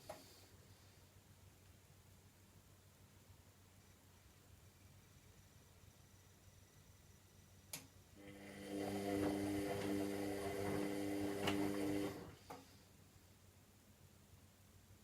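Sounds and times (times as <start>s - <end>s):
washing machine motor humming: 8.2s - 12.4s.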